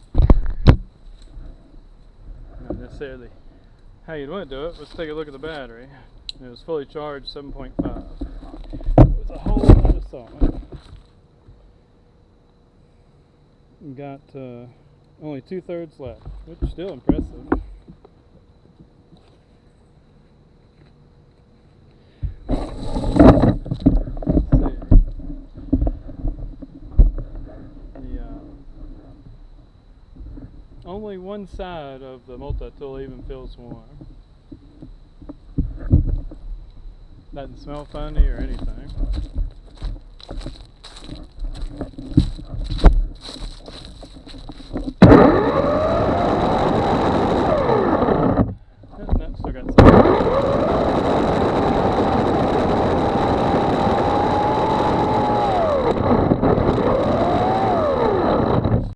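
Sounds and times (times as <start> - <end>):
electric motor whining: 22.5 - 29.2, 37.4 - 48.6, 49.5 - 58.9
rustling: 33.9 - 45.3
handling knocks and bumps: 38.0 - 45.1.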